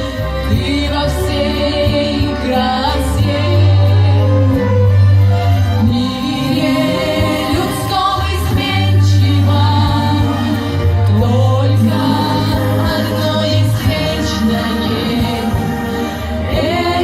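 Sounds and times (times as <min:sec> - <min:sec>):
backing track with heavy bass: 0:00.0 - 0:17.0
girls singing together: 0:05.9 - 0:17.0.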